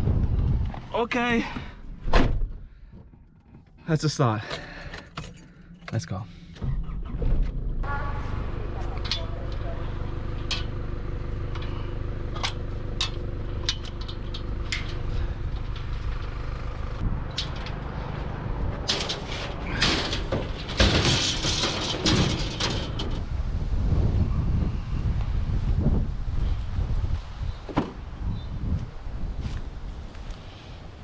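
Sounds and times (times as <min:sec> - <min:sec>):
vehicle engine humming: 0:04.2 - 0:23.8
rushing rattling noise: 0:16.4 - 0:23.3.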